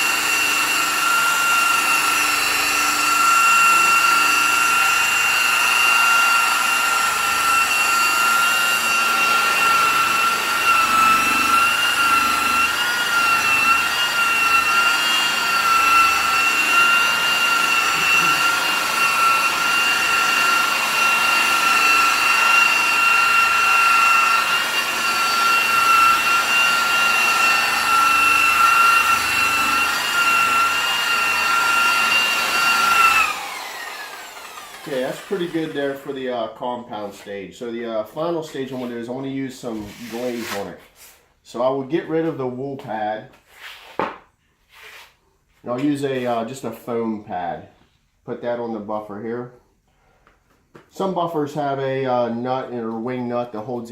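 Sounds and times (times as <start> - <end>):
polishing buffer motor whine: 0.0 - 36.2.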